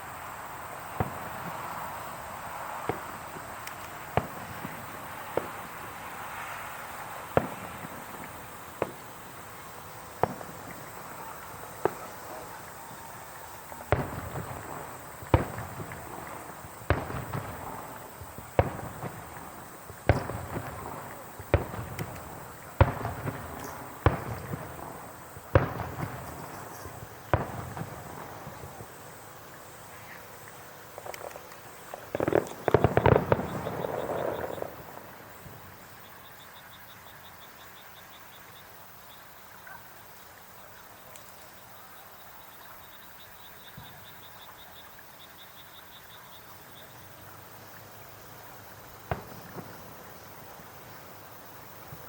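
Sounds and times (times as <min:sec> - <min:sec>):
fireworks bangs: 0:00.0 - 0:36.1, 0:48.9 - 0:52.0.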